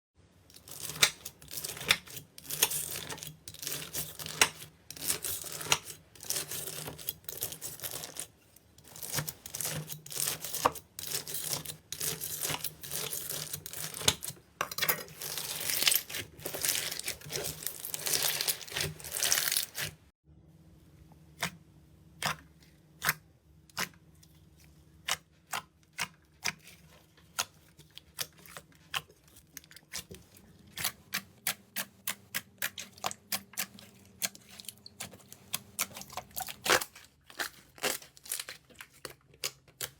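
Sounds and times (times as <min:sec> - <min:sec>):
slime crackling and popping: 0:15.4 - 0:19.9.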